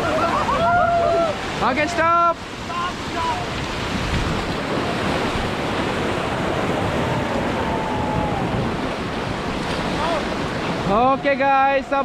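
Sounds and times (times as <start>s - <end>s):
river water rushing: 0.0s - 12.0s
wind buffeting microphone: 3.1s - 11.3s.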